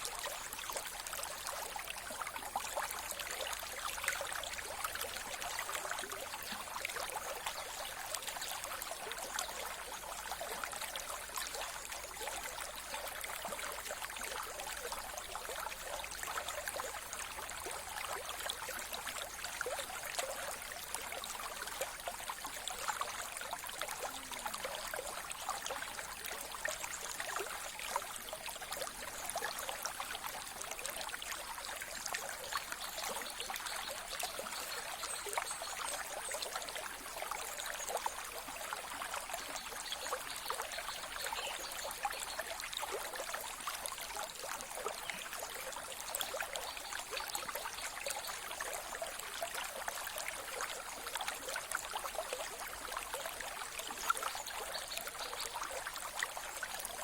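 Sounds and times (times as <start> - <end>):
river water babbling: 0.0 - 57.0.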